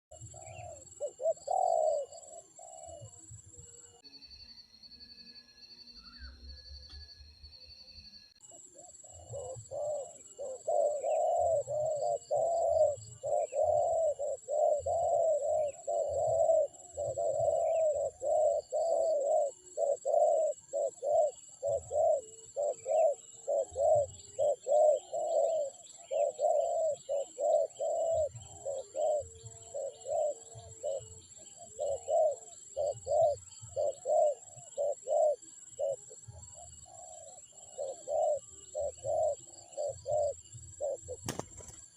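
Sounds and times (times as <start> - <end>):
doves cooing: 0.2 - 3.2, 8.6 - 41.9.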